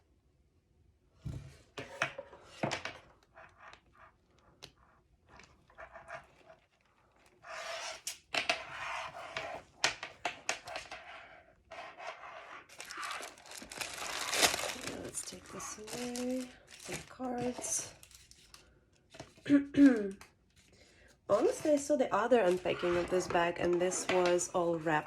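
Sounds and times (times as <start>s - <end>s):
handbag being handled: 12.7s - 18.2s
packaging rustling: 12.7s - 18.7s.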